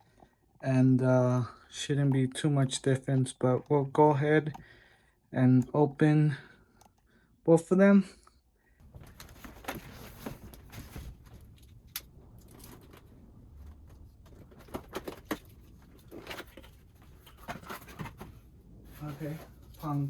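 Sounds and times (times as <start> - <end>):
cardboard box rustling and scraping: 9.1 - 11.4, 14.2 - 20.0.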